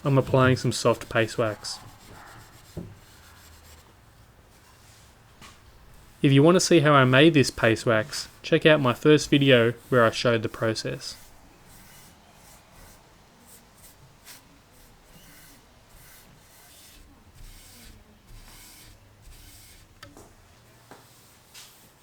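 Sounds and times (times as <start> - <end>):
wax rubbing on wooden tabletop: 0.1 - 3.9, 7.0 - 20.2.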